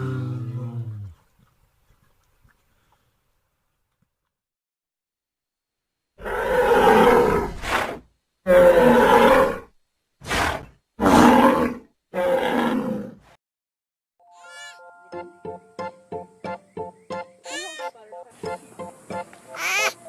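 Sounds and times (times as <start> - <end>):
wild animal calling: 19.5 - 20.0.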